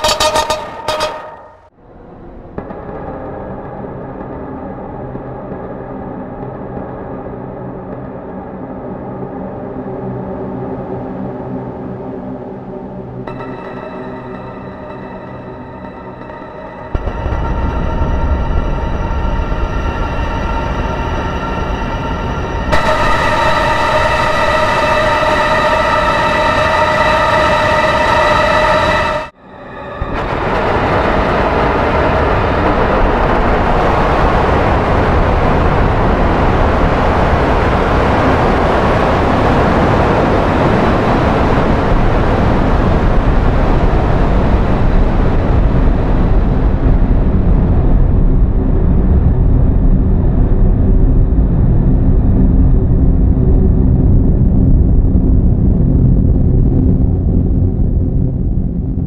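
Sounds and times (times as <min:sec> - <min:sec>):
faint steady tones: 0:13.3 - 0:29.9
low rumble: 0:13.7 - 0:59.0.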